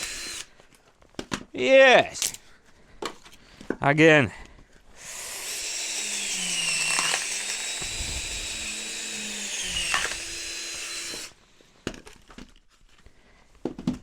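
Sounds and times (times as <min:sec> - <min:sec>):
power drill motor whine: 0:00.0 - 0:00.5, 0:05.0 - 0:11.4.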